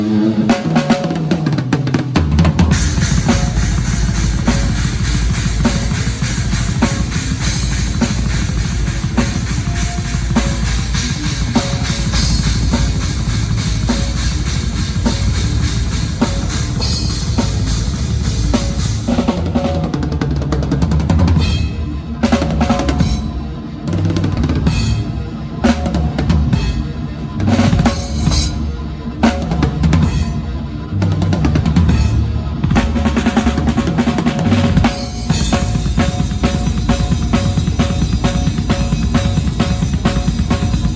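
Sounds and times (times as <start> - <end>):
drum kit played fast: 0.0 - 40.9
cymbal wash: 2.7 - 19.6, 34.6 - 40.9.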